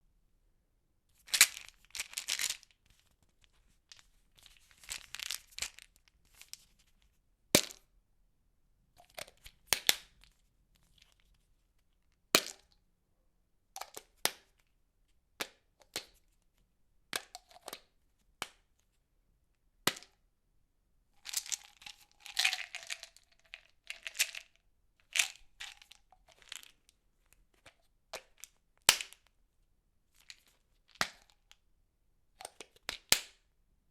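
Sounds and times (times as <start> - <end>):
pill bottle clicking and rattling: 1.2 - 6.8, 17.2 - 18.6, 21.2 - 26.9, 27.6 - 29.3, 30.1 - 31.6, 32.4 - 33.4.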